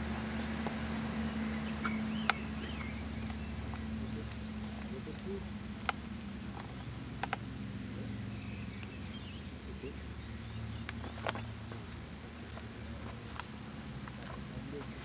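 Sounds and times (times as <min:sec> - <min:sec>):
faint bird chirps: 0:00.0 - 0:07.0, 0:07.9 - 0:12.2
rc car engine idling: 0:00.0 - 0:15.0
sharp clicks: 0:01.8 - 0:07.5.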